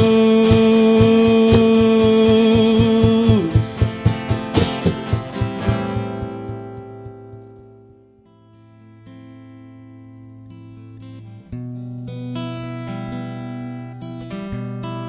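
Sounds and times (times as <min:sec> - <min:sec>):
gospel rap beat with guitar: 0:00.0 - 0:08.0.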